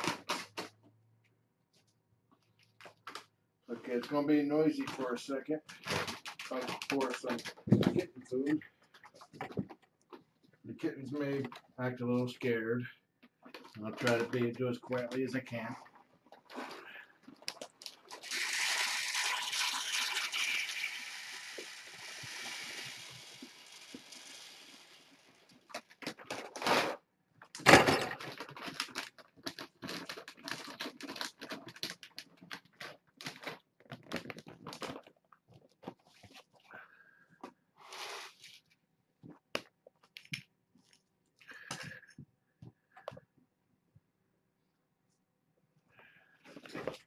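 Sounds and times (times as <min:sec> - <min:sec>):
kibble poured into a bowl: 0:18.1 - 0:25.3.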